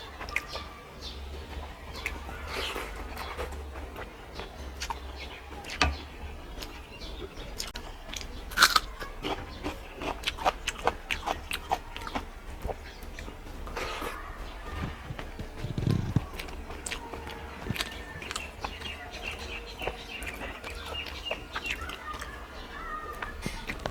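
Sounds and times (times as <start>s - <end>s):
person chewing: 6.6s - 23.9s.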